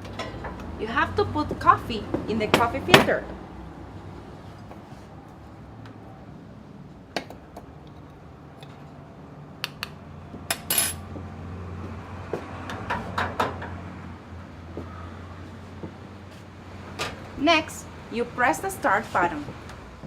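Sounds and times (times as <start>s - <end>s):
spoon and kitchenware clinking: 10.5s - 11.0s.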